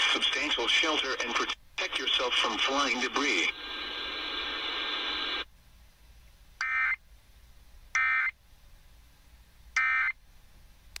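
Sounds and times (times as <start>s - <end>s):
steady radio hiss: 0.0s - 6.2s.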